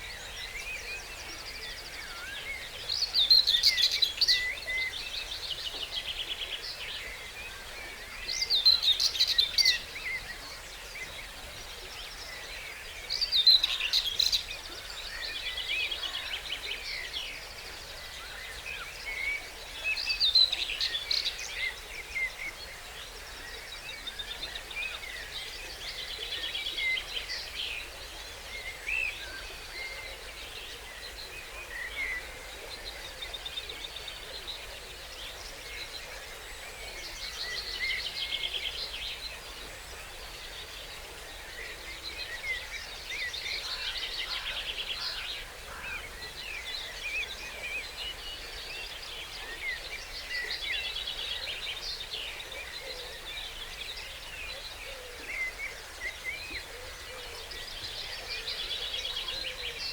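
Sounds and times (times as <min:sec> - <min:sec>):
songbirds singing: 0:00.0 - 0:59.9.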